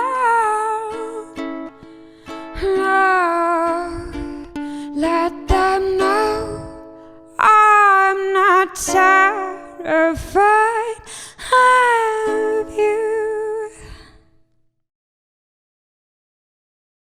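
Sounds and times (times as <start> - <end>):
woman singing wordless notes: 0.0 - 1.5, 2.2 - 14.1
plucked strings: 0.0 - 13.7.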